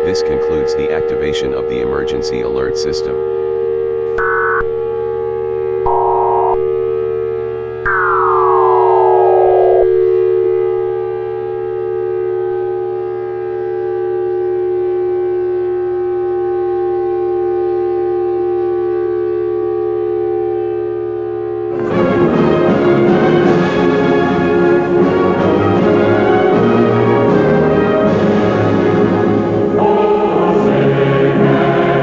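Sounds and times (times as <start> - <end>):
falling electronic sweep: 0.0 - 13.5
low electronic drone: 0.0 - 32.0
faint high tone: 5.8 - 6.7.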